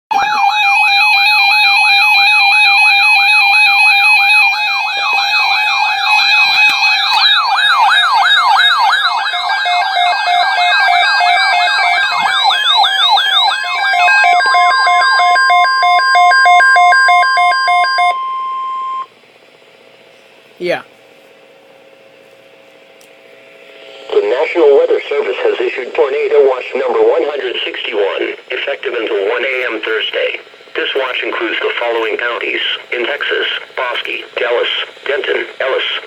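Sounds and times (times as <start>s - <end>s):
rising and falling siren tones: 0.1s - 19.1s
steady single-pitch alert tone: 0.1s - 19.2s
pulsing beeps: 0.2s - 19.1s.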